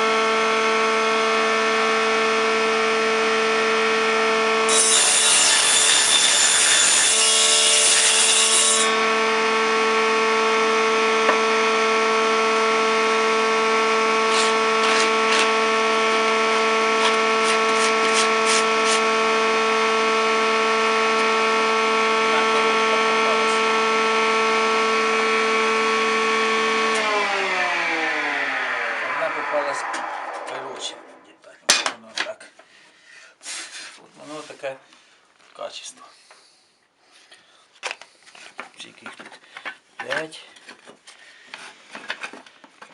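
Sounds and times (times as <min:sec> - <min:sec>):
cutting through wood: 0:04.6 - 0:09.1, 0:14.1 - 0:19.2
machine motor whining: 0:23.0 - 0:31.4.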